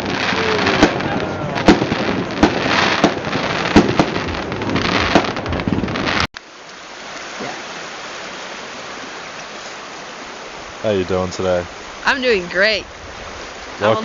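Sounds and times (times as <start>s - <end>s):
fireworks bangs and crackling: 0.0s - 6.3s.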